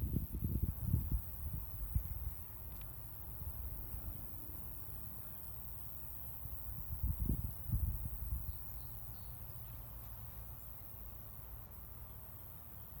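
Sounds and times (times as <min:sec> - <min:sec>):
insect chirps: 0:00.0 - 0:13.0
insect hiss: 0:00.0 - 0:13.0.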